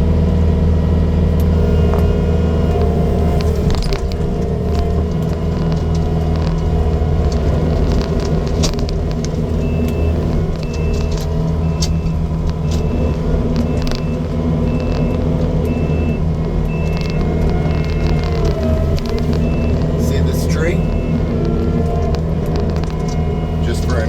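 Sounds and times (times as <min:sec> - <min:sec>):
diesel engine running under load: 0:00.0 - 0:24.0
mower cutting brush: 0:01.4 - 0:10.3
high beeping: 0:01.5 - 0:06.4, 0:09.4 - 0:24.0
sharp cracks and snaps: 0:02.7 - 0:20.2.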